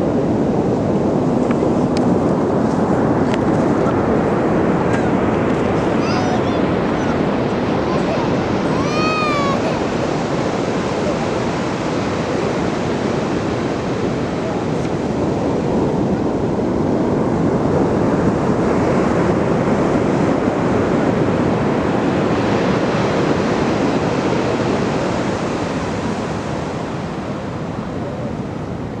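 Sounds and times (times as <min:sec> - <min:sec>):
ocean waves washing onto beach: 0:00.0 - 0:29.0.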